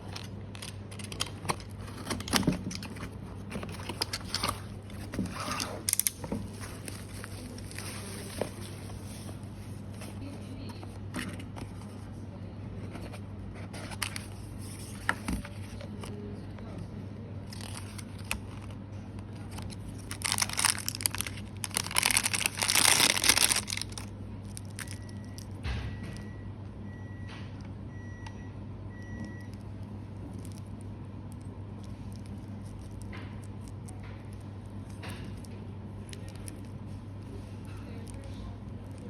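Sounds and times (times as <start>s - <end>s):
packaging crinkling and tearing: 0.0s - 9.3s, 13.8s - 15.8s, 17.5s - 25.5s
steady low hum: 0.0s - 39.0s.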